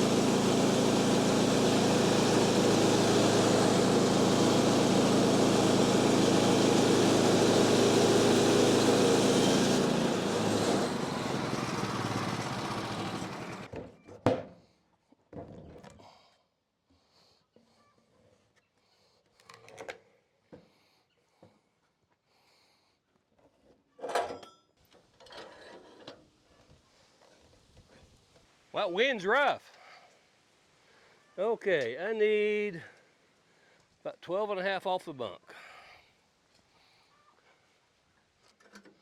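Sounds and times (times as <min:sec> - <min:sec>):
sawmill engine running: 0:00.0 - 0:13.7.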